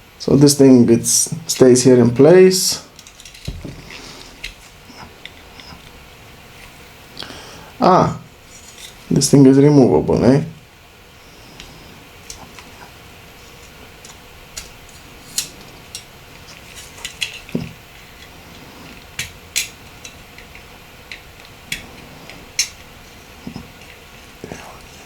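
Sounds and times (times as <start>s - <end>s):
clicks of plastic parts prised apart: 16.7s - 18.3s.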